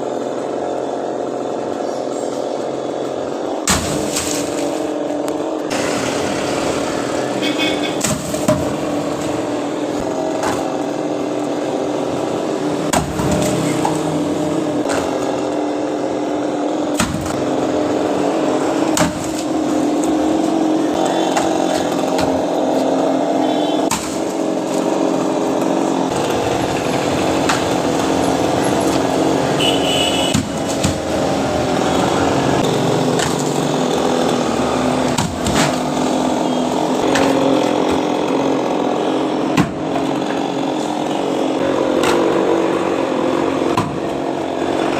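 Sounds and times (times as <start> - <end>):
chainsaw cutting wood: 3.6 - 44.9
sharp knocks: 30.3 - 31.0.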